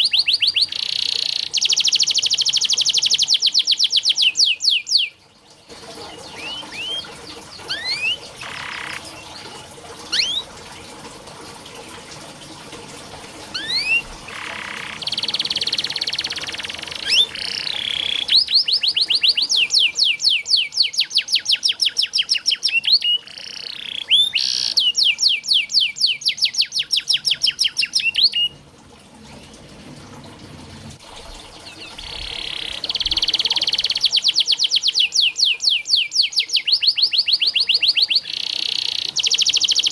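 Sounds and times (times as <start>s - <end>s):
canary singing trills: 0.0s - 5.2s, 6.0s - 10.5s, 13.5s - 28.6s, 31.6s - 39.9s
harsh buzzy bird phrases: 7.7s - 9.3s, 13.6s - 20.8s.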